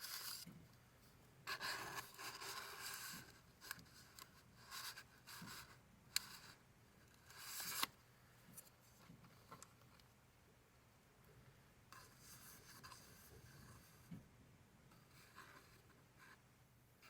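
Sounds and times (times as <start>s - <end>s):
paper sliding and rustling: 0.0s - 0.5s, 1.5s - 6.5s, 7.2s - 7.9s.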